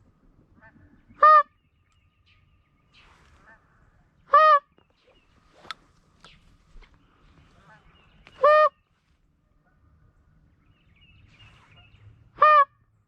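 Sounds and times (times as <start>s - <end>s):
distant geese honking: 0.5s - 1.6s, 3.3s - 6.0s, 6.8s - 10.5s, 11.3s - 12.9s
goose call honk: 0.6s - 1.5s, 4.3s - 4.7s, 8.4s - 8.8s, 12.4s - 12.8s.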